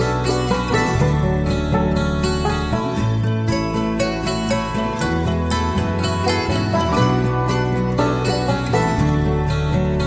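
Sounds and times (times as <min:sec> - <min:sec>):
bluegrass banjo music: 0:00.0 - 0:10.0.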